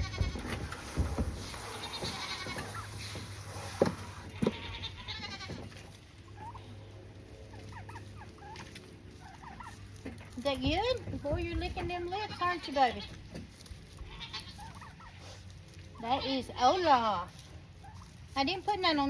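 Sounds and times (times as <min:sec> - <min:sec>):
goats bleating: 0:00.0 - 0:00.7, 0:01.5 - 0:03.3, 0:04.2 - 0:05.8, 0:12.0 - 0:13.2, 0:13.9 - 0:15.2
chickens clucking: 0:00.0 - 0:19.0.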